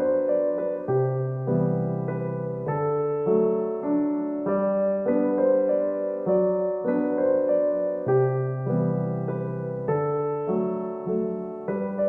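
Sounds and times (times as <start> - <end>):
soft piano music: 0.0 - 12.0.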